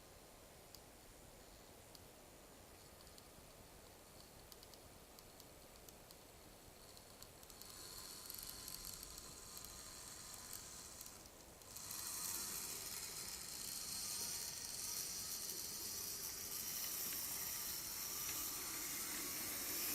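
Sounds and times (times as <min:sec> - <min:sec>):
toy train motor whirring: 0:06.8 - 0:19.9.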